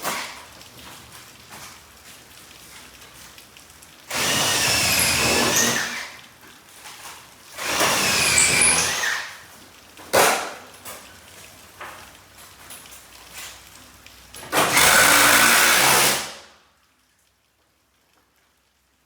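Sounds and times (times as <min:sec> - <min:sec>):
power drill motor whine: 0:04.1 - 0:06.1, 0:07.6 - 0:09.2, 0:14.7 - 0:16.3.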